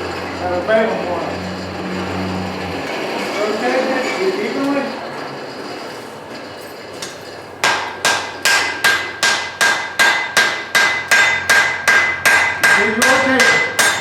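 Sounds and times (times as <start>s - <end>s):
hammer striking steel on anvil: 7.0s - 14.0s.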